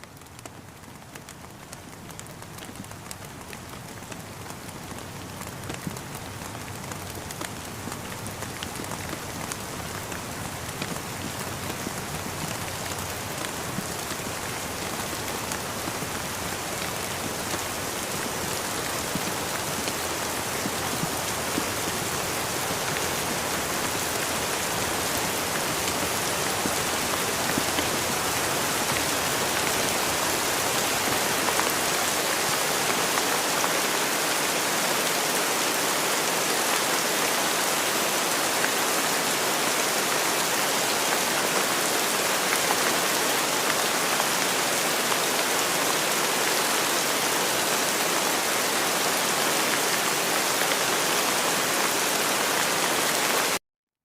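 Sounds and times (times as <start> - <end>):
individual raindrop ticks: 0.0 - 15.6
steady rain hiss: 0.0 - 53.6.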